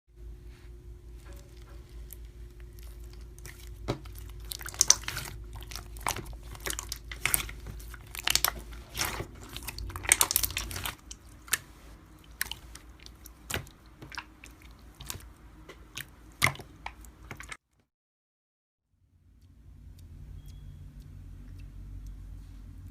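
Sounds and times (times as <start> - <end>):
steady low hum: 0.1 - 17.5, 18.9 - 22.9
slime crackling and popping: 1.6 - 17.6.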